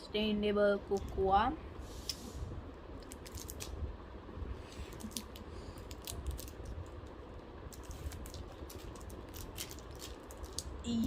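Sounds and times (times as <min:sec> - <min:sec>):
plastic wrapper crinkling: 0:03.0 - 0:03.7, 0:04.9 - 0:10.8.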